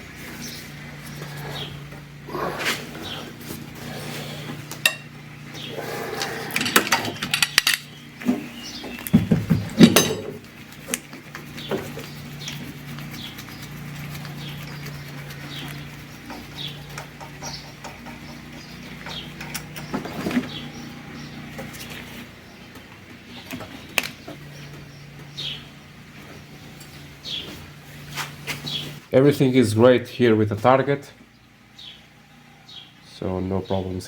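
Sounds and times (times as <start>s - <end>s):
steady low hum: 0.0s - 34.0s
metal tools clinking and knocking: 6.6s - 7.9s, 9.8s - 10.4s, 19.4s - 20.3s
small bird chirping: 7.5s - 9.8s, 10.5s - 29.0s, 31.2s - 33.9s.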